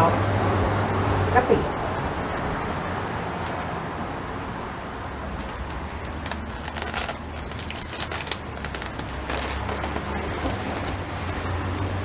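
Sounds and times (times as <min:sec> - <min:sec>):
traffic hum: 0:00.0 - 0:12.0
plastic packaging crinkling: 0:05.4 - 0:11.8.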